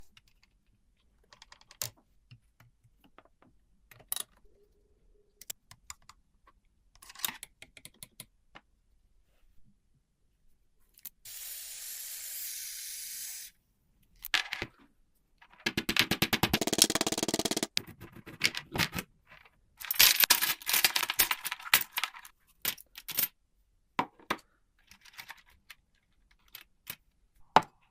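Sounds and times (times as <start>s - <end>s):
spray hiss: 11.3s - 13.5s.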